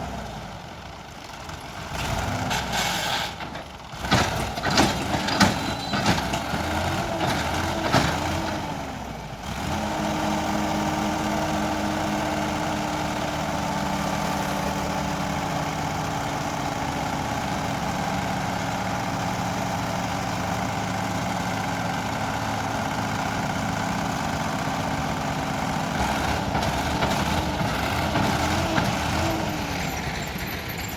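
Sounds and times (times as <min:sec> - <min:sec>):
heavy diesel engine revving: 0:00.0 - 0:30.9
engine knocks: 0:03.5 - 0:08.7, 0:14.8 - 0:30.9.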